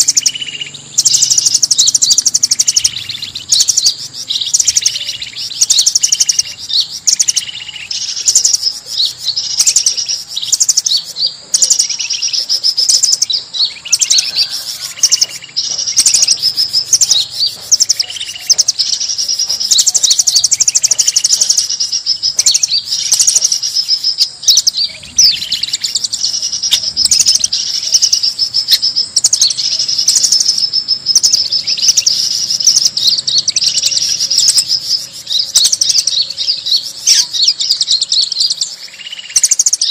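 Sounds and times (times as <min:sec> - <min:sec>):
chorus of forest birds: 0:00.0 - 0:39.9.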